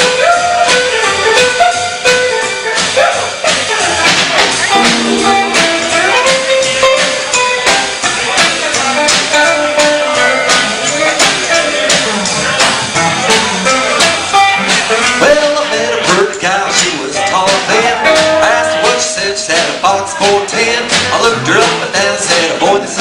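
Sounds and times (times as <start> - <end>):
country boogie band playing: 0.0 - 23.0
steel guitar: 4.4 - 15.9.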